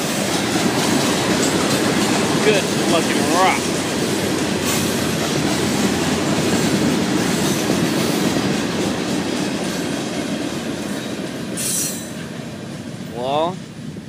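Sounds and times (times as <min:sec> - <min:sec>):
freight train wheels rumbling: 0:00.0 - 0:14.0.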